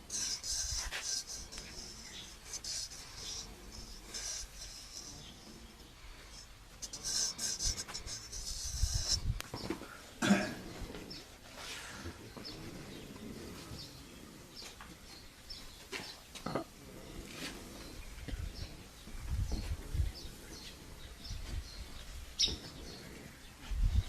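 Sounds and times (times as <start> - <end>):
razor scraping: 0.0 - 9.6
birds chirping: 0.0 - 24.0.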